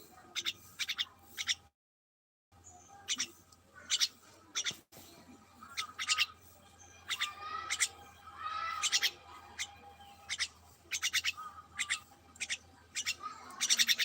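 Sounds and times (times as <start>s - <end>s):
small birds chirping: 0.0s - 1.7s, 2.5s - 14.0s
bird warbling calls: 0.3s - 1.6s, 2.9s - 4.8s, 5.6s - 14.0s.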